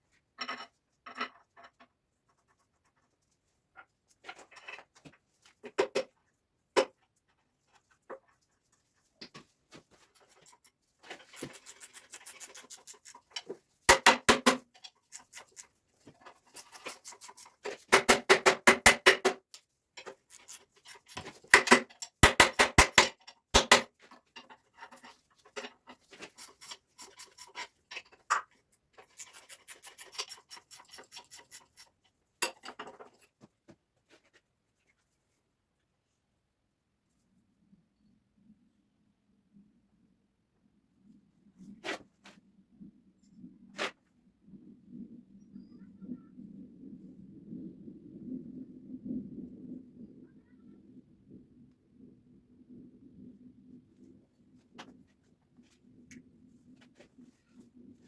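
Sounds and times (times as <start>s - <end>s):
sharp knocks on metal: 17.9s - 19.4s, 21.5s - 23.9s.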